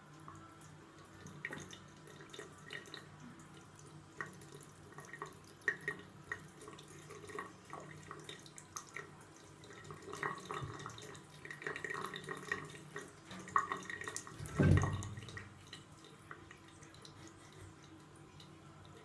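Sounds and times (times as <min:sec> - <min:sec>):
low steady hum: 0:00.0 - 0:19.0
water splashing in a basin: 0:04.1 - 0:17.9.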